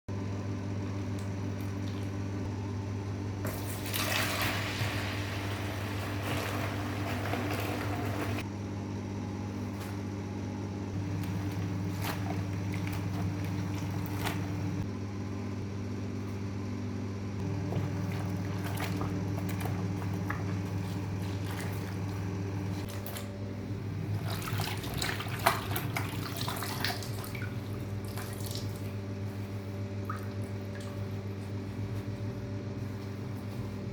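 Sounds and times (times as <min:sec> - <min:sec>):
low mechanical hum: 0:00.1 - 0:33.9
water splashing in a sink: 0:03.5 - 0:08.4, 0:11.1 - 0:14.9, 0:17.4 - 0:29.1, 0:30.0 - 0:31.7.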